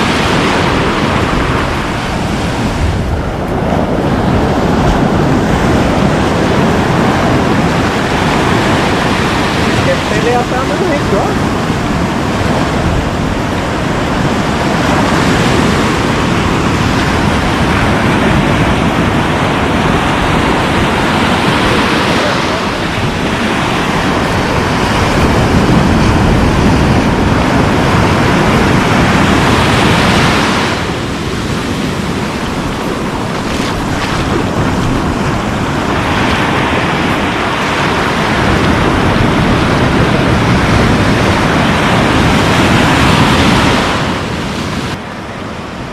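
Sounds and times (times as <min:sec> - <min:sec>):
surf washing onto beach: 0:00.0 - 0:45.9
wind buffeting microphone: 0:00.0 - 0:45.9.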